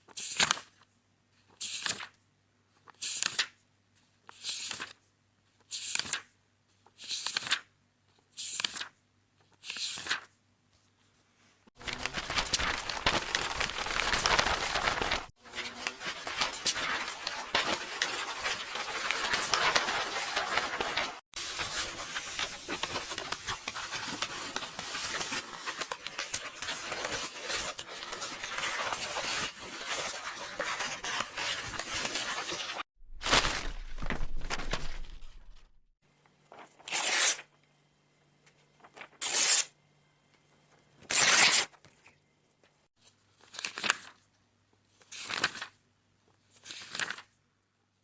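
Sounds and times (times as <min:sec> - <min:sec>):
book pages rustling: 0:01.4 - 0:35.8, 0:43.0 - 0:44.4, 0:46.4 - 0:47.3
paper tearing: 0:11.8 - 0:35.6, 0:36.8 - 0:37.5, 0:39.0 - 0:39.7, 0:41.0 - 0:41.8.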